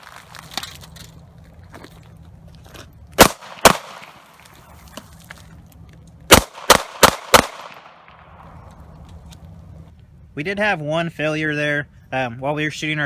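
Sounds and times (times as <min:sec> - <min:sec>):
pistol shots: 0:03.2 - 0:04.3, 0:06.3 - 0:08.3.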